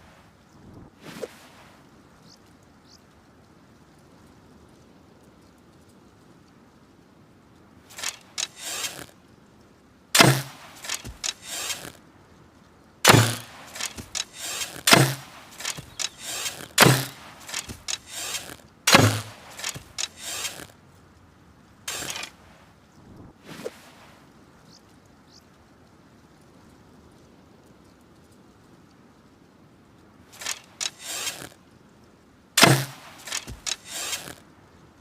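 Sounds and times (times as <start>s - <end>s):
rattle of small clicks: 7.9s - 9.1s, 10.2s - 12.0s, 13.1s - 20.7s, 21.9s - 22.4s, 30.3s - 31.6s, 32.6s - 34.4s
bow shots with low thump: 10.2s - 12.0s, 13.1s - 20.7s, 21.9s - 22.3s, 32.6s - 34.4s.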